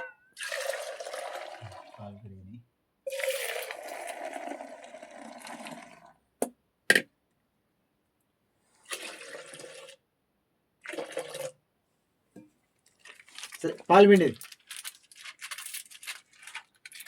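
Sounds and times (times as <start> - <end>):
liquid pouring into a vessel: 0.4 - 2.1, 3.1 - 6.2, 8.8 - 10.0, 10.8 - 11.6.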